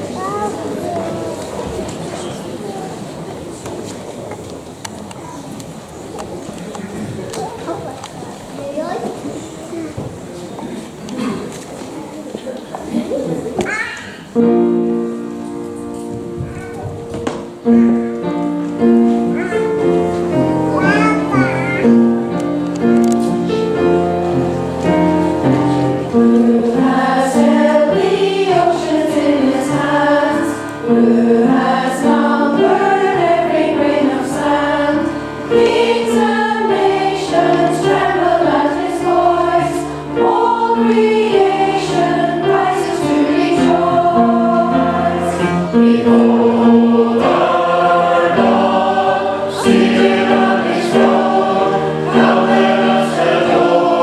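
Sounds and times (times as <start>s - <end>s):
choir singing a hymn: 14.4s - 54.0s.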